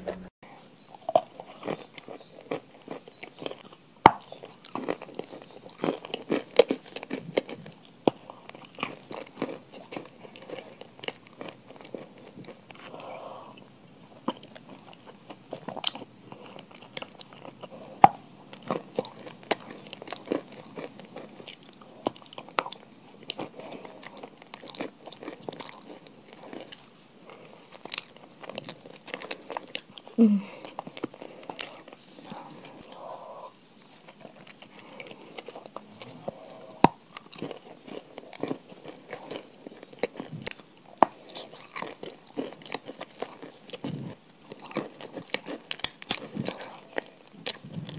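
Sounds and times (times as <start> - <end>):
crunchy food being chewed: 0.0 - 47.9
person humming: 30.2 - 30.6.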